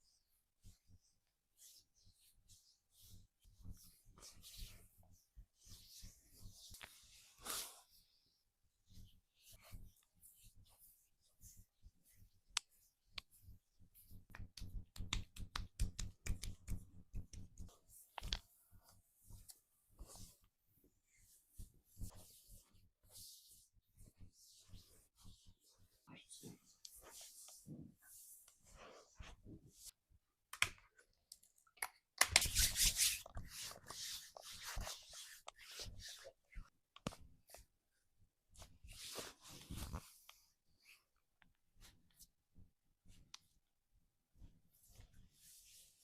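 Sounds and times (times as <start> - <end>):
hands rubbing skin: 8.9 - 20.5, 21.1 - 30.0, 32.2 - 37.7.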